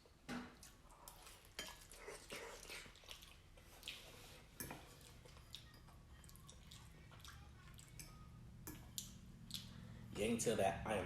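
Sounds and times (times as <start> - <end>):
wet mouth eating sounds: 0.6 - 4.3, 8.8 - 10.0.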